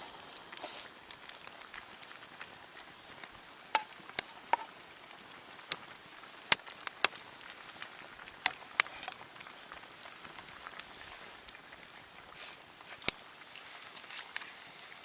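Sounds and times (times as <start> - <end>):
campfire crackling and popping: 0.0 - 15.0.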